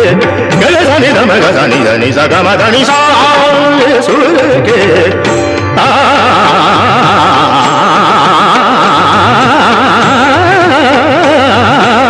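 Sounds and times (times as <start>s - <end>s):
person singing fast melodic runs: 0.0s - 12.0s
steady musical accompaniment: 0.0s - 12.0s.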